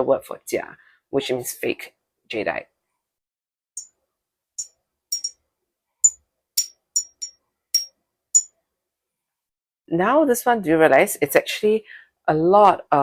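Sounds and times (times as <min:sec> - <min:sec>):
stone tapping with high ring: 0:04.6 - 0:05.4, 0:06.0 - 0:08.5.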